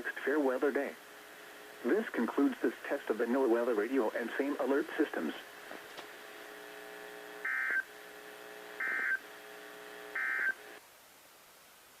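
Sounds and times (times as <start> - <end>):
faint steady hum: 0.0 - 12.0
harsh digital data bursts: 7.4 - 7.9, 8.8 - 9.3, 10.0 - 10.8.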